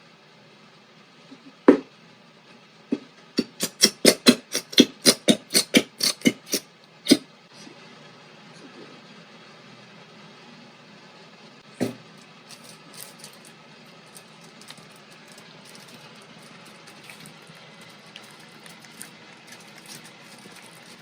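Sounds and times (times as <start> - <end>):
slime squishing and scraping: 3.4 - 7.2, 12.5 - 21.0.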